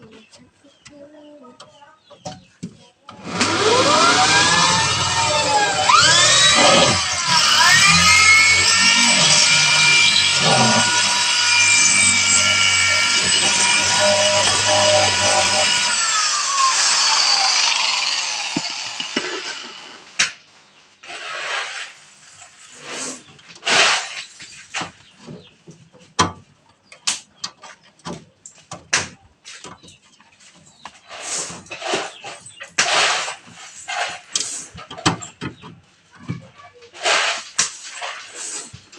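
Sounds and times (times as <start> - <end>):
power tool motor winding down: 3.2 - 20.2
short scrapes: 21.0 - 24.8, 31.0 - 34.7.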